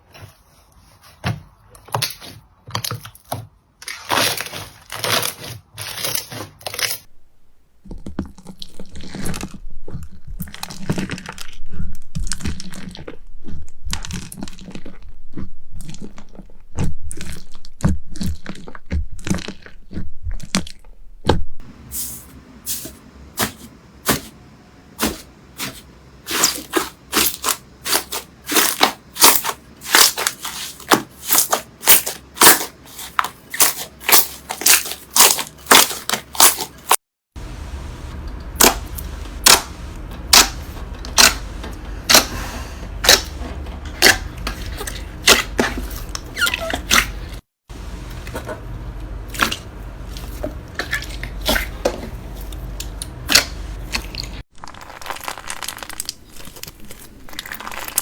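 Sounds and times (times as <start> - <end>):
low steady hum: 37.4 - 54.4.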